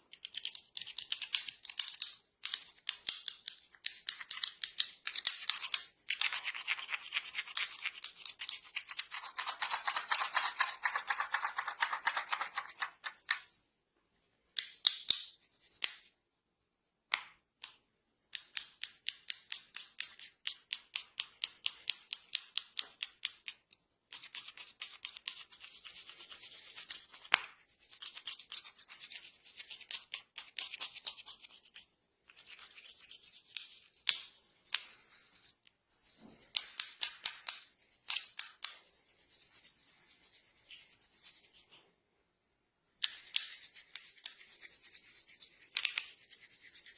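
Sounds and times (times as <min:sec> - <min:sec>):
hands rubbing hair and scalp: 0:24.1 - 0:41.8.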